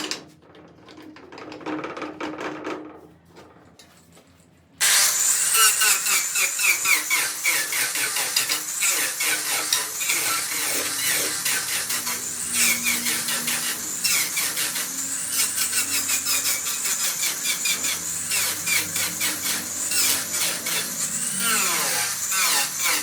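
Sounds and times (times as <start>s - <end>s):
angle grinder cutting wood: 4.8s - 23.0s.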